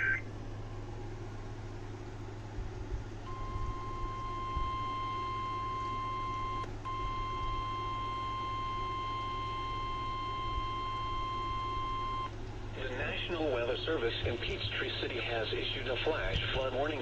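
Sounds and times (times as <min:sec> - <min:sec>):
low radio hum: 0:00.0 - 0:17.0
long high warning beep: 0:03.3 - 0:12.3.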